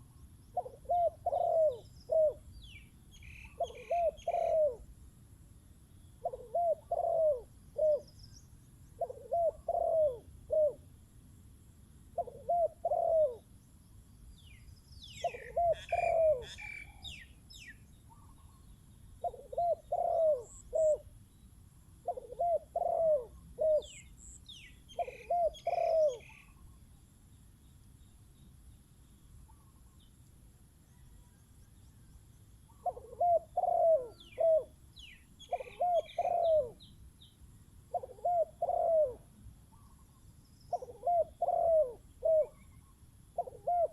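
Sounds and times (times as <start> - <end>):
small birds chirping: 0.0 - 4.8, 12.2 - 30.2, 30.9 - 39.0, 39.6 - 43.9
doves cooing: 0.6 - 2.5, 3.5 - 4.9, 6.2 - 8.1, 9.0 - 10.8, 12.2 - 13.5, 15.2 - 17.0, 19.2 - 21.1, 22.0 - 24.0, 24.9 - 26.6, 32.7 - 34.8, 35.4 - 36.9, 37.9 - 40.1, 40.7 - 42.7, 43.4 - 43.9.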